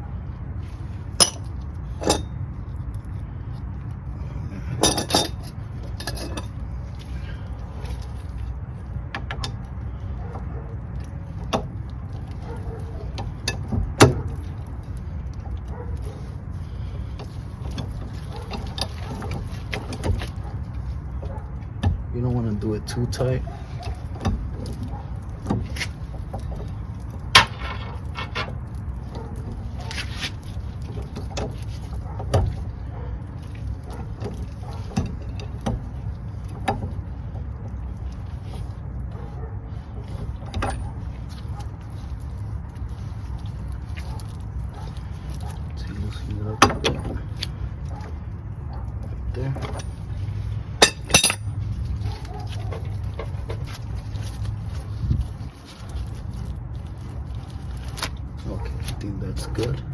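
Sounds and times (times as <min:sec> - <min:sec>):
steady low rumble: 0:00.0 - 0:59.9
metal tools clinking: 0:01.2 - 0:02.4, 0:04.8 - 0:06.6, 0:27.3 - 0:28.6, 0:49.4 - 0:53.7
hand tools clicking on metal hub: 0:49.6 - 0:51.6.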